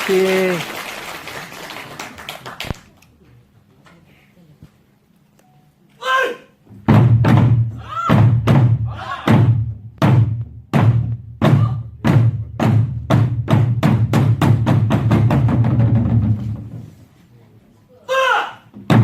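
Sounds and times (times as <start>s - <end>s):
percussion band striking: 6.9s - 16.7s, 18.8s - 19.0s.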